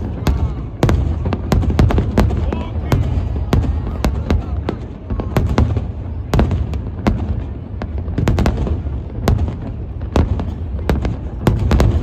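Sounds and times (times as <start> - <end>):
fireworks bangs: 0.0 - 12.0
low rumble of fireworks: 0.0 - 12.0.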